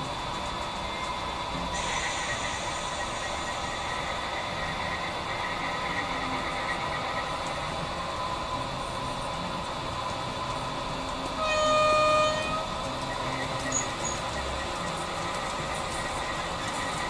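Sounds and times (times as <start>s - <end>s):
locomotive horn blast: 11.3s - 12.8s.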